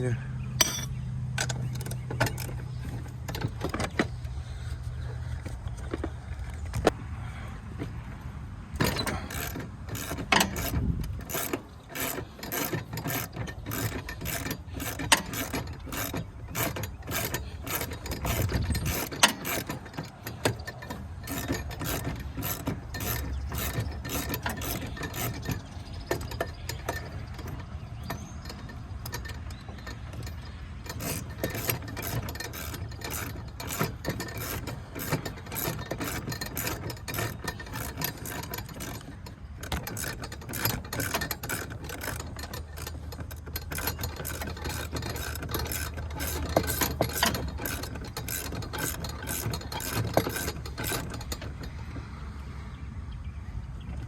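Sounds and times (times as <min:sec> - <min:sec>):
ratchet wrench clicking: 0:08.8 - 0:51.7.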